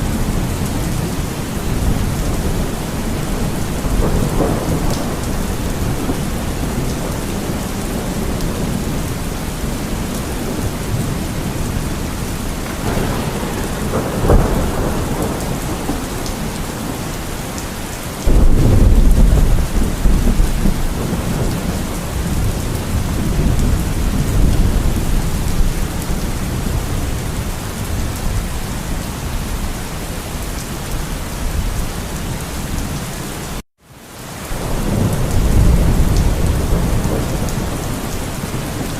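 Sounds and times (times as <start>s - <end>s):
thunder rumbling: 0.0s - 30.2s, 34.5s - 38.9s
heavy rain: 0.0s - 38.9s.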